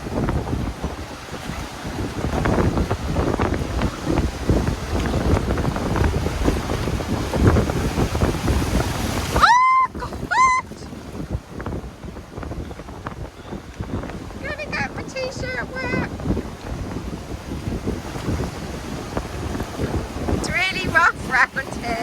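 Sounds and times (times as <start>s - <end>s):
waves on shingle shore: 0.0s - 22.0s
wind buffeting microphone: 0.0s - 22.0s
short rising cries: 9.4s - 10.7s.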